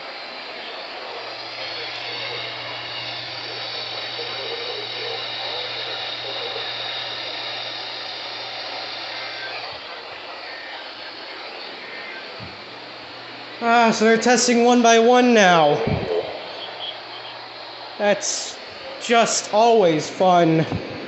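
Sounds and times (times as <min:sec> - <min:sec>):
faint radio signal: 0:00.0 - 0:21.0
radio static hiss: 0:00.0 - 0:21.0
low hum: 0:15.6 - 0:19.0.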